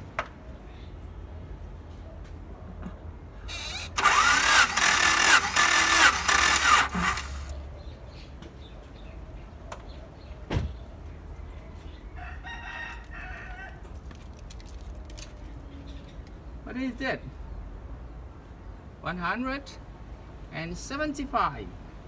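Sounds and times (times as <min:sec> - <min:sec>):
car starter cranking engine: 0:03.5 - 0:07.5.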